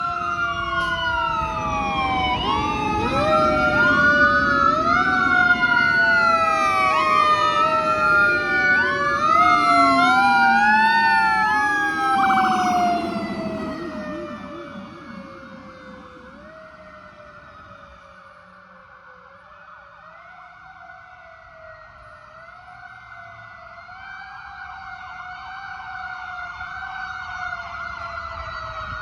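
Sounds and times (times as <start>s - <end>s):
fast siren warble: 0.0s - 18.6s
fire engine sirens wailing: 0.0s - 29.0s.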